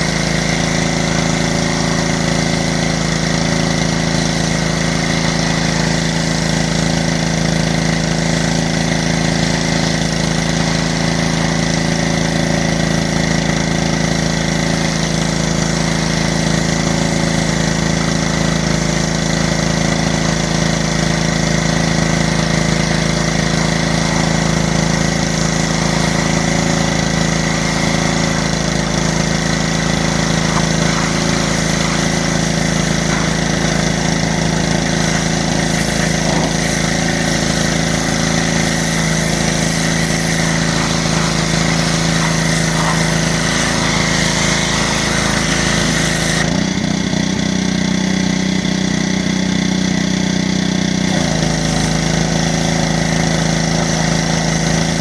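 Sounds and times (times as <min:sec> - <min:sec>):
spray hissing: 0:00.0 - 0:08.6, 0:20.8 - 0:46.4
pressure washer engine running: 0:00.0 - 0:55.0.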